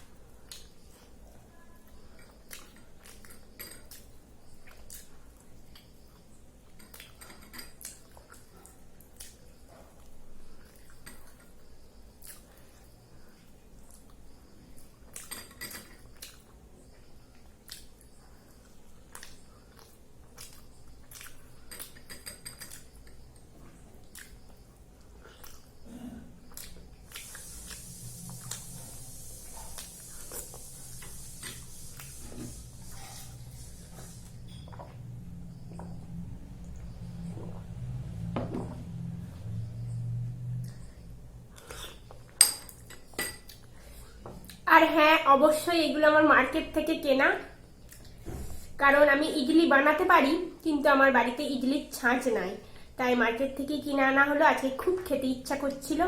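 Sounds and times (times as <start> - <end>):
utensils clinking on a plate: 21.7 - 22.8, 42.4 - 43.5
steady hiss: 25.8 - 35.5.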